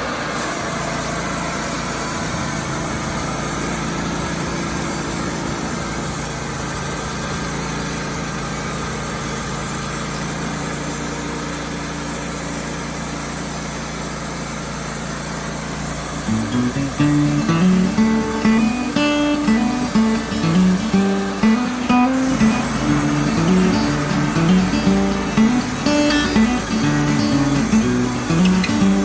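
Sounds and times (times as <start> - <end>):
sawmill engine running: 14.4 - 29.0.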